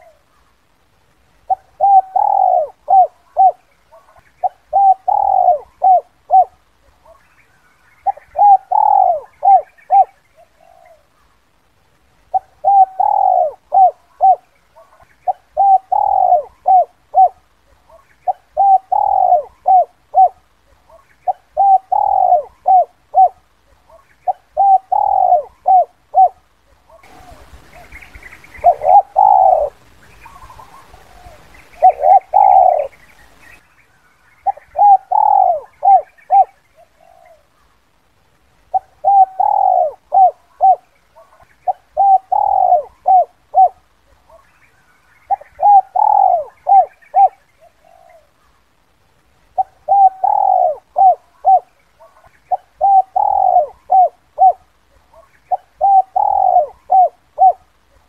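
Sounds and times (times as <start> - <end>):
faint hiss: 0.0 - 58.0
dove cooing: 1.4 - 7.4, 8.0 - 11.3, 12.3 - 33.5, 34.4 - 37.7, 38.7 - 48.6, 49.5 - 58.0.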